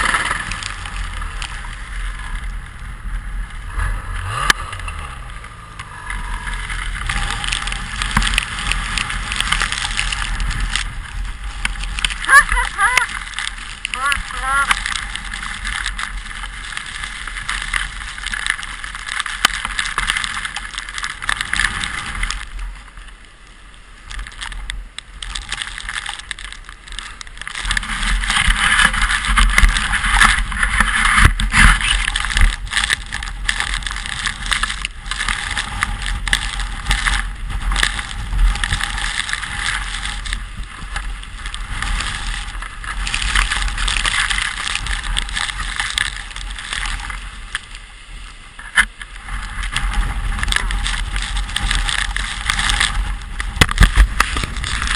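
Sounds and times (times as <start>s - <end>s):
low rumble: 0.0s - 23.5s
sled sliding over snow: 0.0s - 54.9s.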